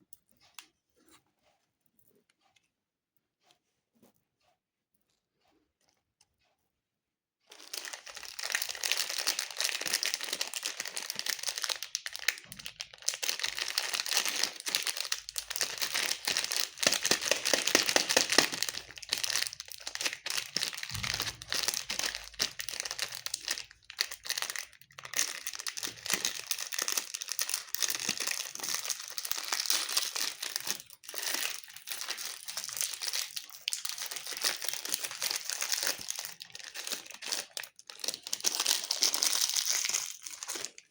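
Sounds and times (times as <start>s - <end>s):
plastic wrappers crinkling: 7.5s - 40.9s.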